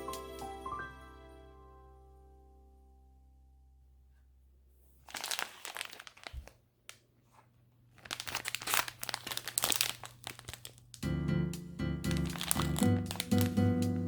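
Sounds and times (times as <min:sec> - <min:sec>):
plastic packaging crinkling: 0:05.0 - 0:11.0, 0:12.1 - 0:14.0.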